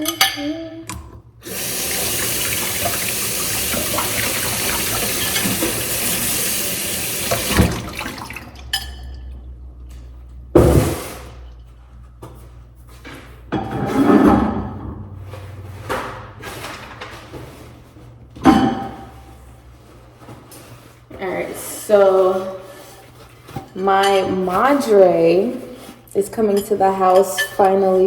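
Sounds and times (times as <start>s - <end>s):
water running from a tap: 1.4s - 8.8s.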